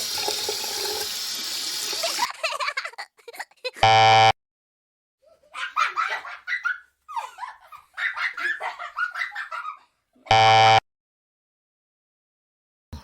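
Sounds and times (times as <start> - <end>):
harsh buzzer sound effect: 3.8 - 4.3, 10.3 - 10.8.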